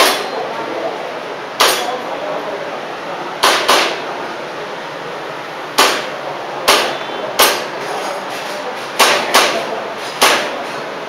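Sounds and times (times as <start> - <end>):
airsoft pistol shots: 1.6 - 1.9, 3.4 - 4.0, 5.8 - 7.7, 9.0 - 10.6.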